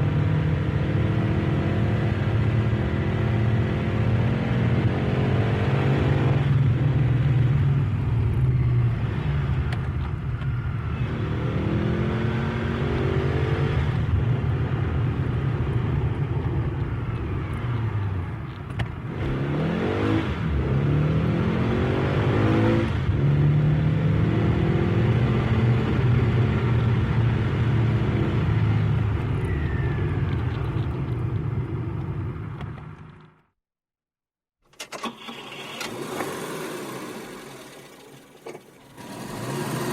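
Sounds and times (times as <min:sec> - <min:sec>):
car engine revving: 0:19.0 - 0:29.2, 0:35.0 - 0:39.9.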